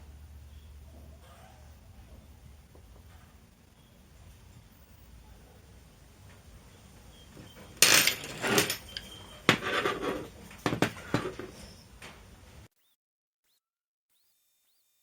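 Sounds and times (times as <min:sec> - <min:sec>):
metallic clinks and knocks: 0:07.5 - 0:09.2.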